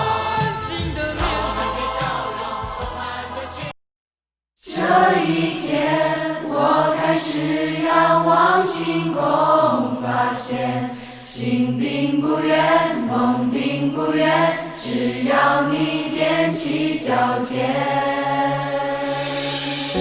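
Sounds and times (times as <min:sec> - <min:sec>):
choir singing: 0:00.0 - 0:03.7, 0:04.6 - 0:20.0
music with sung vocals: 0:00.0 - 0:03.7, 0:11.9 - 0:20.0.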